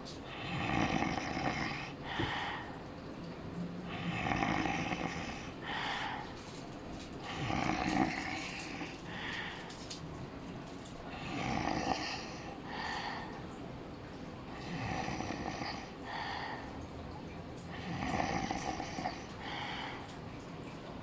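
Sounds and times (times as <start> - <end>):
loud snoring: 0.3 - 2.4, 3.9 - 6.5, 7.2 - 9.9, 11.1 - 13.3, 14.5 - 16.6, 17.7 - 20.0.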